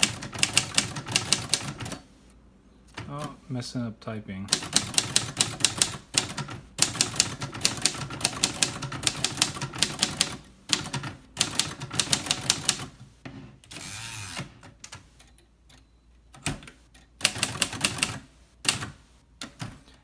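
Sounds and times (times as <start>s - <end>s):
typewriter rasp: 0.0s - 2.0s, 4.5s - 12.9s, 17.2s - 19.8s.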